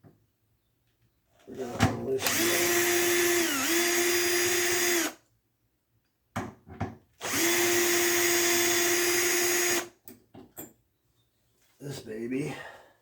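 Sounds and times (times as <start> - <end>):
cordless drill whining: 2.2 - 5.2, 7.2 - 9.9.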